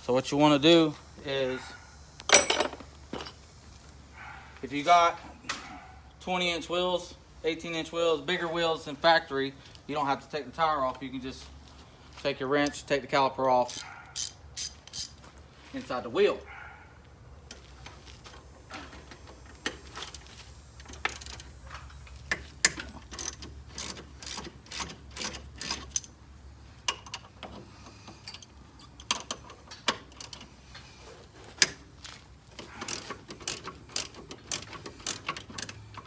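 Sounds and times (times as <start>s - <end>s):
hand ratchet clicking: 13.6s - 15.2s, 19.6s - 21.6s, 22.3s - 26.2s, 32.6s - 36.0s.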